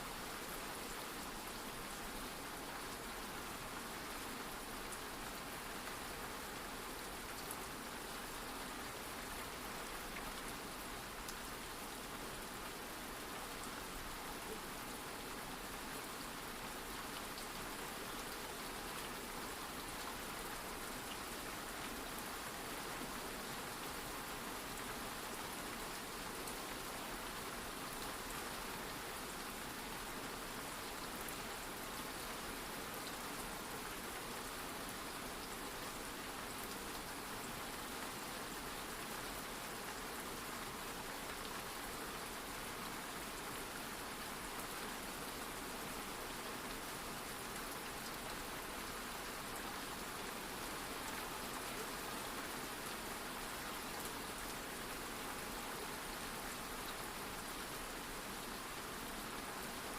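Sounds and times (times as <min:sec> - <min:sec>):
steady rain hiss: 0:00.0 - 0:59.9
faint raindrop ticks: 0:11.2 - 0:11.5.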